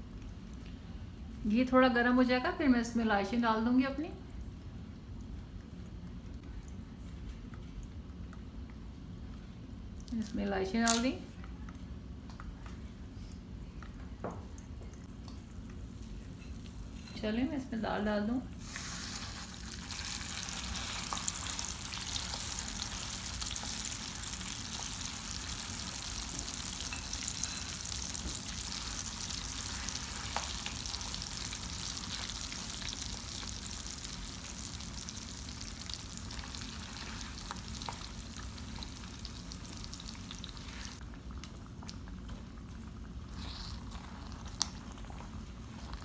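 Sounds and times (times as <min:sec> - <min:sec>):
paste sizzling in a pan: 0:18.6 - 0:41.0.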